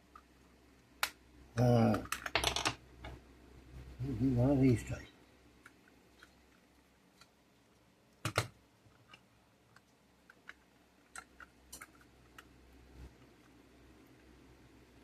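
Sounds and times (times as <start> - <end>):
small tools and plastic parts clicking: 1.0 - 3.2, 8.2 - 13.6.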